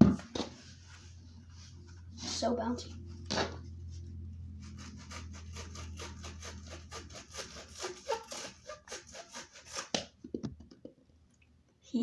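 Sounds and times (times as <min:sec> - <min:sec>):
scraping and snipping rubber: 0:04.6 - 0:10.2.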